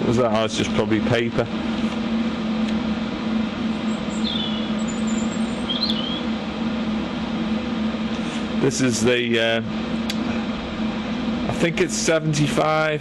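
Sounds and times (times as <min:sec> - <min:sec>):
low hum: 0:00.0 - 0:13.0
torch flame hissing: 0:03.7 - 0:13.0
high chirps: 0:03.9 - 0:06.3.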